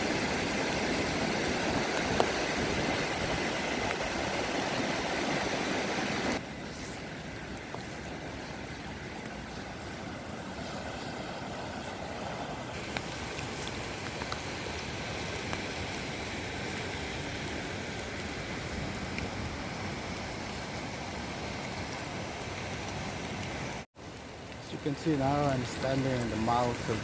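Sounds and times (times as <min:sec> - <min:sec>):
fast-flowing river rushing: 0:00.0 - 0:18.5.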